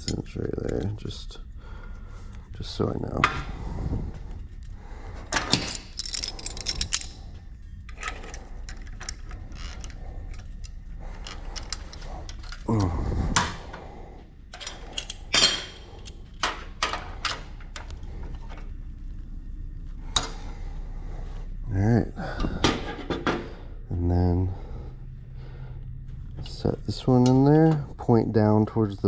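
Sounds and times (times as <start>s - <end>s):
metal parts clicking and knocking: 5.3s - 13.8s, 14.5s - 17.9s.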